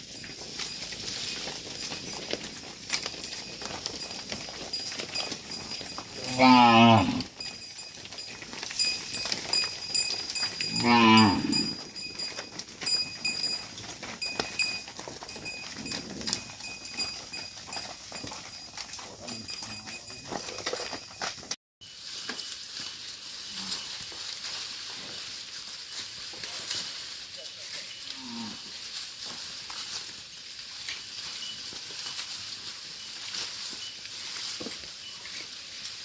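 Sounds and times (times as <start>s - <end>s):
cattle mooing: 6.2s - 7.3s, 10.6s - 11.8s.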